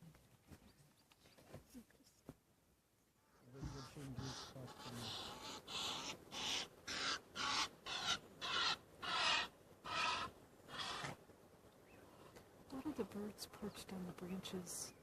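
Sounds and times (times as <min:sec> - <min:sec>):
bird harsh rasping call: 0:03.2 - 0:11.2.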